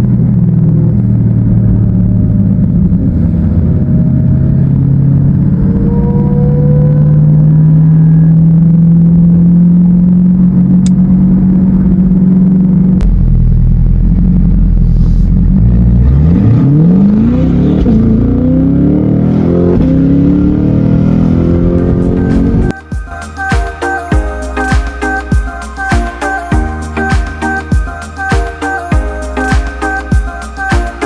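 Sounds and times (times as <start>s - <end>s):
car engine accelerating: 0.0s - 23.2s.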